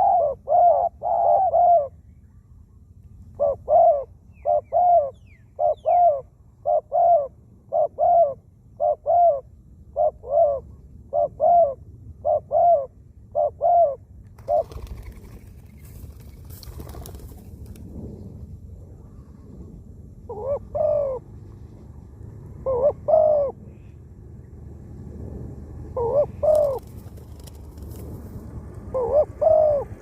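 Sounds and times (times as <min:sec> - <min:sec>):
dove cooing: 0:00.0 - 0:02.0, 0:03.4 - 0:15.4, 0:20.3 - 0:21.3, 0:22.6 - 0:23.7, 0:25.9 - 0:27.5, 0:28.9 - 0:30.0.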